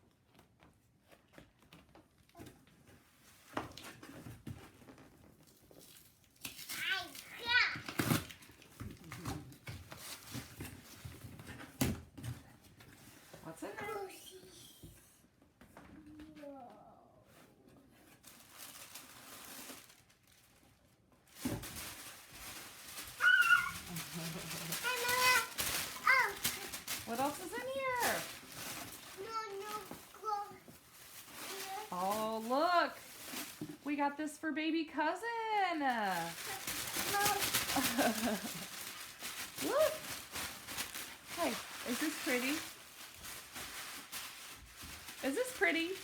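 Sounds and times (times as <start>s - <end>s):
package rustling: 3.7s - 11.7s, 18.1s - 34.0s, 35.8s - 46.0s.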